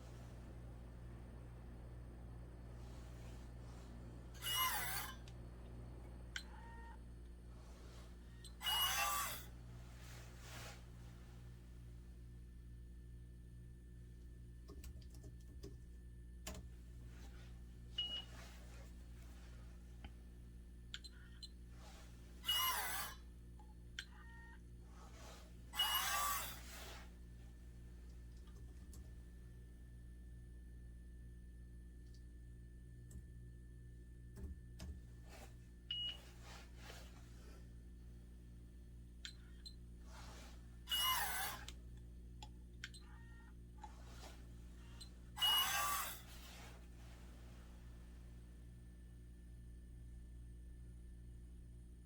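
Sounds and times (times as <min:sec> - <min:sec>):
steady low hum: 0:00.0 - 0:52.0.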